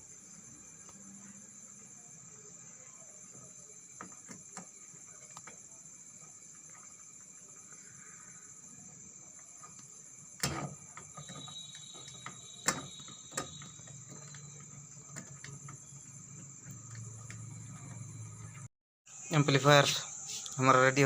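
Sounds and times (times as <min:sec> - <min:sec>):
crickets chirring: 0:00.0 - 0:21.0
sharp clicks and knocks: 0:09.4 - 0:18.7.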